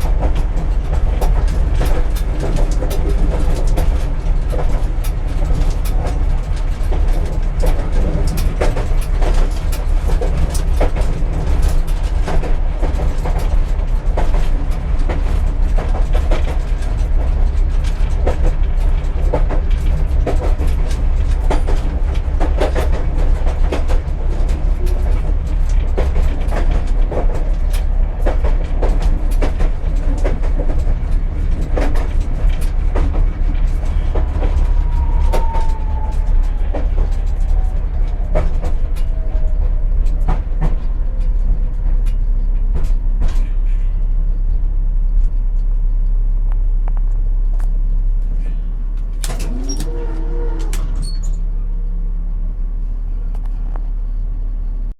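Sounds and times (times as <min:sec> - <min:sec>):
tram wheels knocking over rail joints: 0:00.0 - 0:44.7, 0:47.6 - 0:52.0
heavy tram rumble: 0:00.0 - 0:54.9
thin high wheel squeal: 0:33.8 - 0:40.1, 0:49.2 - 0:51.6.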